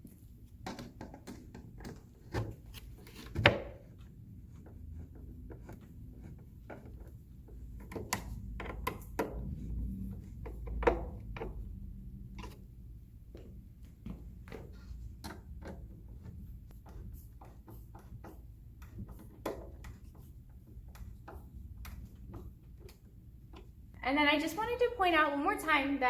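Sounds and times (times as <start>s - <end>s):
toy panels clicking and knocking: 6.6s - 9.7s.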